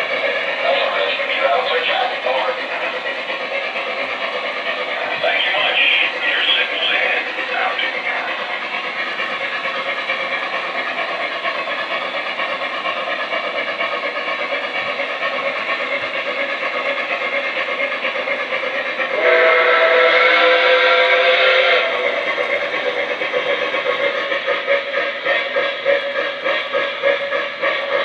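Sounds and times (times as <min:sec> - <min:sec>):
model steam engine running sounds: 0:00.0 - 0:28.0
steam whistle blast: 0:19.1 - 0:22.1.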